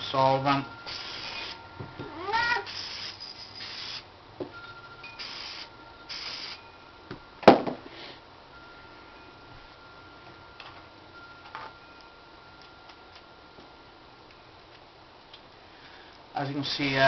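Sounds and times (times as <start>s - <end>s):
cat meowing: 2.1s - 2.7s
aerosol can spraying: 5.2s - 6.6s.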